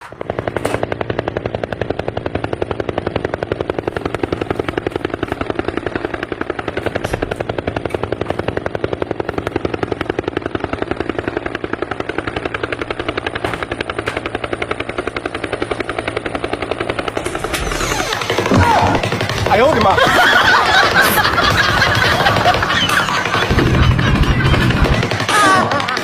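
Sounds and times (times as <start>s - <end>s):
rapid mechanical pulsing: 0.0s - 26.0s.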